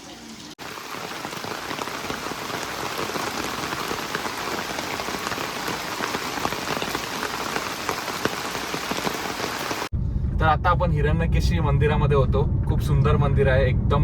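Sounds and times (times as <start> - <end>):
rain falling steadily: 0.0 - 9.9.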